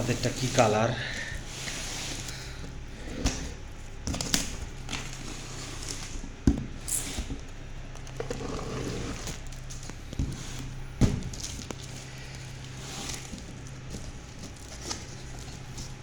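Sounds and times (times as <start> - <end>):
steady low hum: 0.0 - 16.0
packaging crinkling rustle: 7.4 - 16.0.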